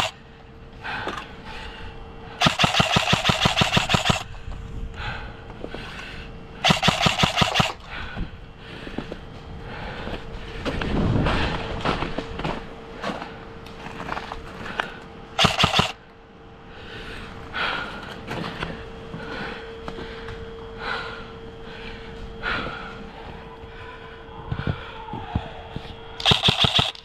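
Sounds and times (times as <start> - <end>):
faint steady hum: 0.0 - 27.0
airsoft guns firing: 2.4 - 4.3, 6.6 - 7.8, 15.4 - 16.0, 26.2 - 27.0.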